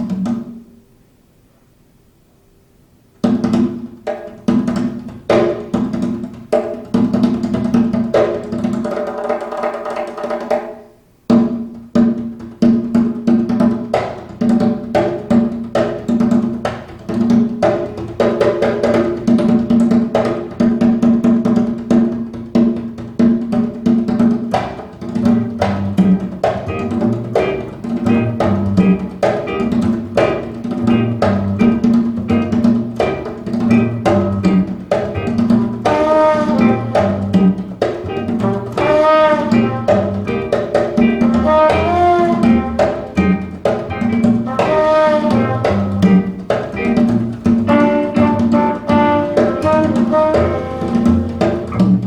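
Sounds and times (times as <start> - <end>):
percussive music over loudspeakers: 22.3 - 52.0.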